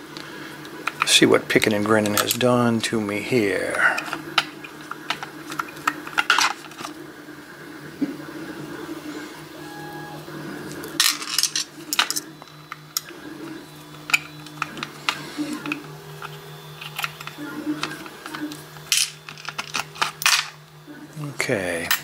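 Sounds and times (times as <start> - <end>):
metal parts and tools clinking: 11.0 - 12.3, 18.9 - 20.6.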